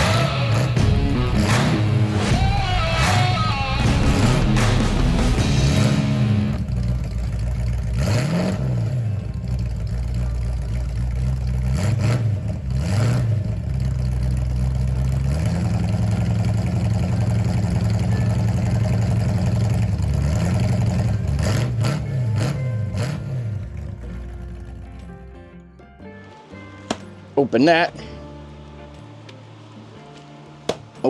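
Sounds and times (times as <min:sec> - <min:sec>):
rock music: 0:00.0 - 0:11.8
engine revving: 0:00.0 - 0:25.1.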